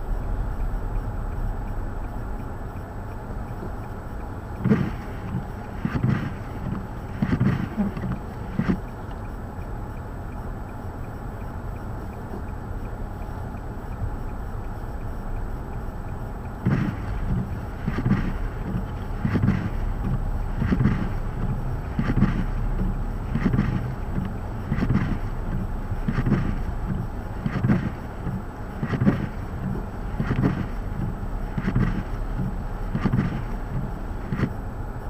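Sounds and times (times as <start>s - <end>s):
short thuds: 16.6s - 34.6s
wind rumbling on microphone: 16.6s - 35.0s.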